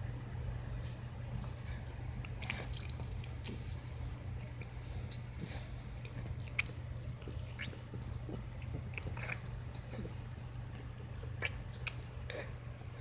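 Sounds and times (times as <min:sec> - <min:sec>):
steady low hum: 0:00.0 - 0:13.0
dog mouth clicks and smacks: 0:02.2 - 0:03.6, 0:06.1 - 0:12.2.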